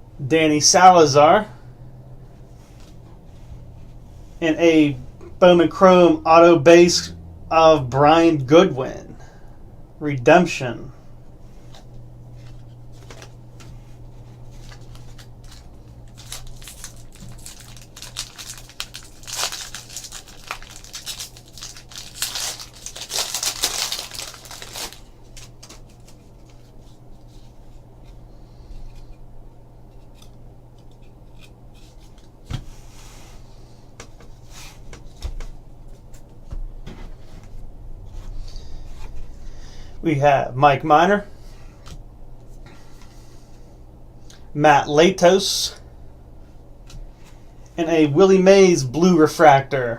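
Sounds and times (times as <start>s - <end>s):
steady low hum: 0.0s - 49.9s
foil wrapper tearing and crinkling: 14.6s - 26.5s.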